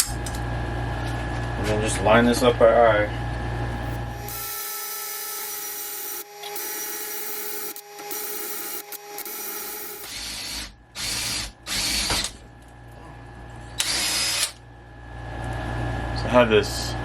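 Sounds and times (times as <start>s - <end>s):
electric drill whining: 4.0s - 12.4s, 13.8s - 14.6s.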